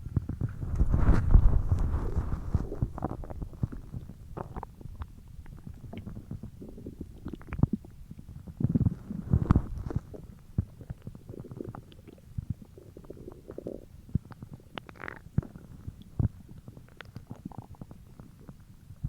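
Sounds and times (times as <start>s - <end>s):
stomach growling and gurgling: 0.0s - 19.0s.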